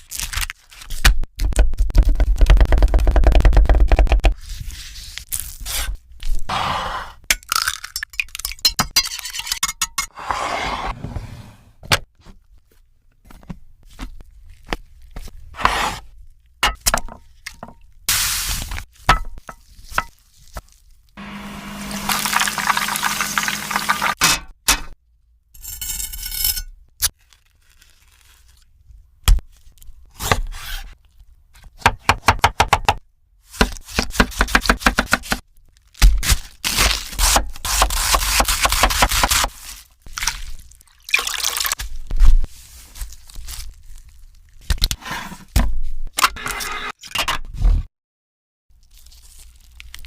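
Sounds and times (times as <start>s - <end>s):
kitchen scraping: 9.0s - 11.8s, 15.6s - 16.1s.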